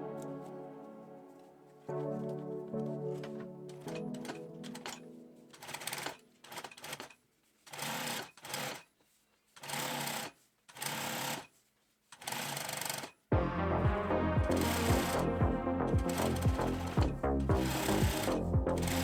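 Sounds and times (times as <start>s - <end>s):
sewing machine stitching: 3.8s - 8.9s, 9.6s - 11.6s, 12.2s - 13.2s, 16.1s - 19.0s.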